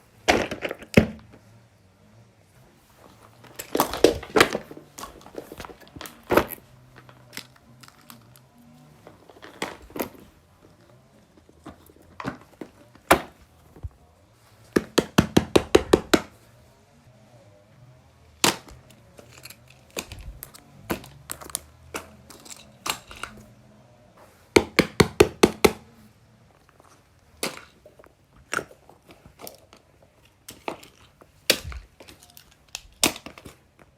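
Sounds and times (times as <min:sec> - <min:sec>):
crinkling: 0:02.6 - 0:14.8, 0:18.4 - 0:23.6, 0:25.9 - 0:33.9.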